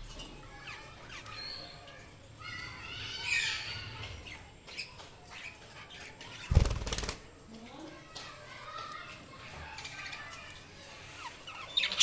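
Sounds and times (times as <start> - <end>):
budgerigars chirping and chattering: 9.8 - 12.0.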